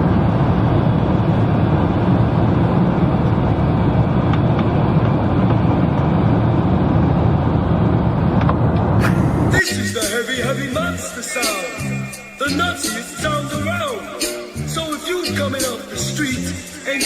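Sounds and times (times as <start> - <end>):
airliner cabin noise: 0.0 - 17.0.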